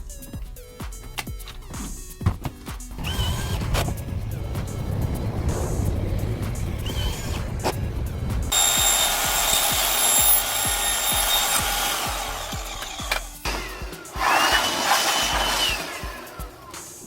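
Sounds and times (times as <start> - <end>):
power tool cutting: 3.0 - 4.0, 8.5 - 17.0.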